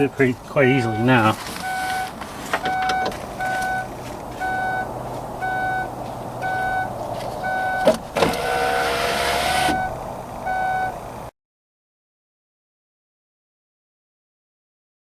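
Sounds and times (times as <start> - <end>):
car warning chime beeping: 0.6 - 11.0
power window motor running: 7.5 - 10.0.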